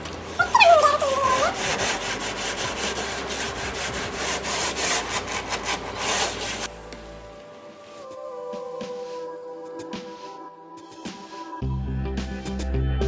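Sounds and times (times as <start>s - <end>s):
scrubbing strokes on a refrigerator: 0.0s - 6.8s.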